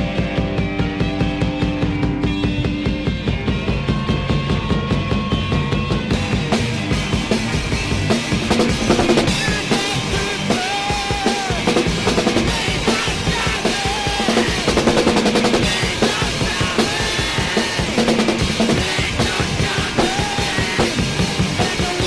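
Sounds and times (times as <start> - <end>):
drum kit bass drum and snare: 0.0 - 22.0
rock band playing: 0.0 - 22.0.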